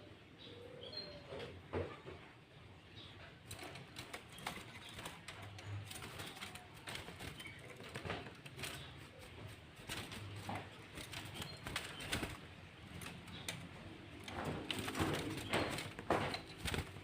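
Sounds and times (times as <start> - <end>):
rustling knocks: 3.5 - 17.0.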